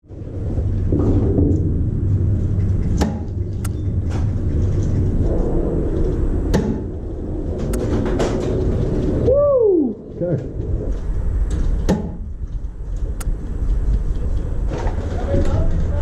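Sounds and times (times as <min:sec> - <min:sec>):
low rumble: 0:00.0 - 0:16.0.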